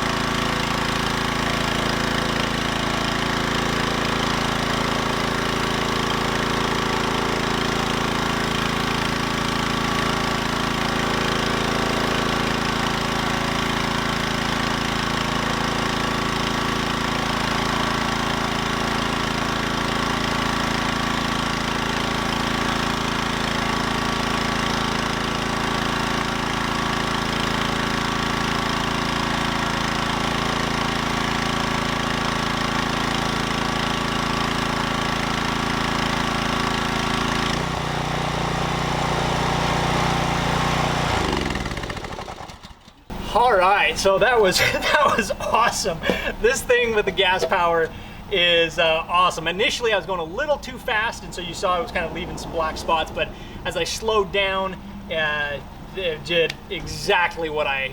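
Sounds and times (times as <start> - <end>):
pressure washer engine running: 0.0 - 57.9.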